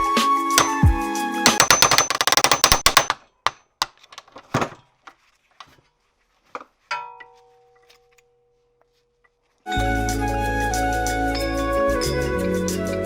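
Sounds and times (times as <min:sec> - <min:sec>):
hand tools clicking: 0:00.6 - 0:00.9, 0:01.5 - 0:04.4
ringing metal clank: 0:00.6 - 0:00.9, 0:01.5 - 0:03.7, 0:06.9 - 0:08.4
tools knocking on metal: 0:00.6 - 0:00.9, 0:01.5 - 0:04.8.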